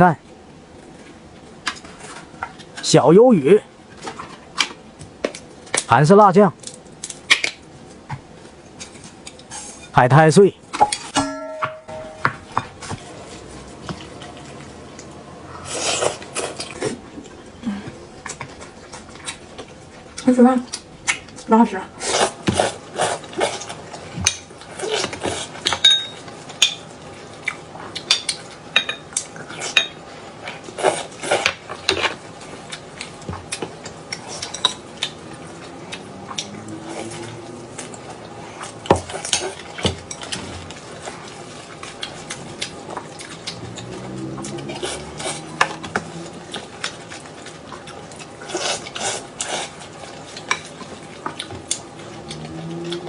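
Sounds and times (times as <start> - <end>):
spoon clinking against bowl: 11.2 - 12.4, 25.8 - 26.8.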